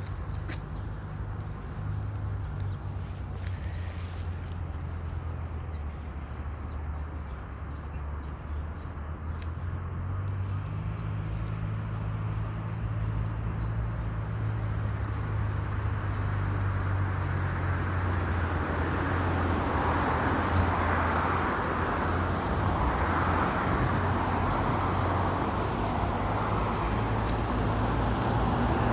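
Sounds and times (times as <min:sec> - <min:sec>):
low engine hum of traffic: 0:00.0 - 0:28.9
vehicle passing: 0:00.0 - 0:28.9.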